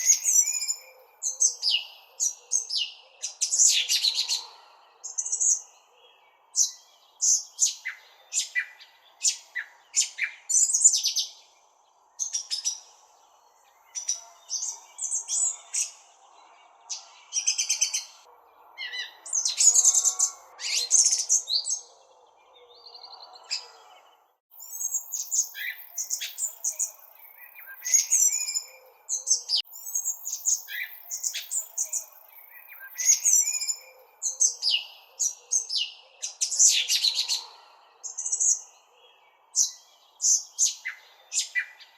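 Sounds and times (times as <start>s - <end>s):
songbirds chirping and trilling: 0.0s - 41.9s.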